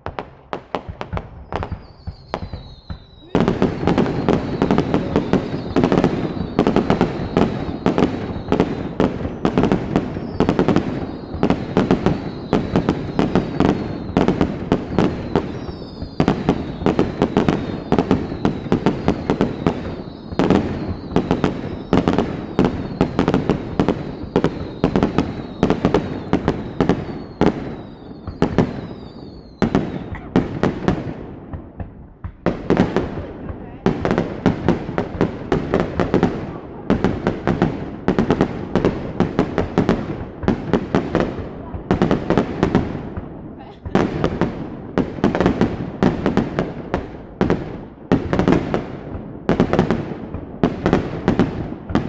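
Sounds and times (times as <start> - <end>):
firework whistles falling in pitch: 1.1 - 30.2.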